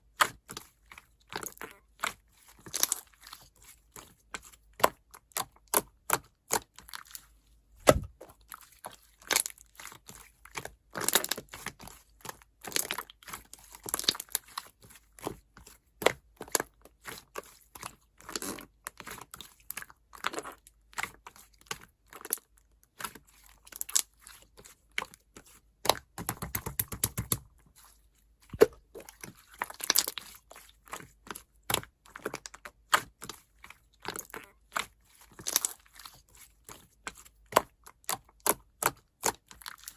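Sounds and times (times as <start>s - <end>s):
slime squished by hand: 7.8s - 8.2s.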